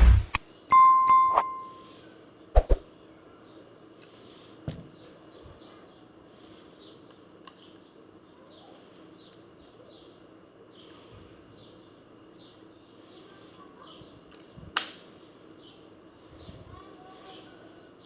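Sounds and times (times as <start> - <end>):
birds chirping: 0.0 - 0.4
shotgun shot: 0.0 - 0.4.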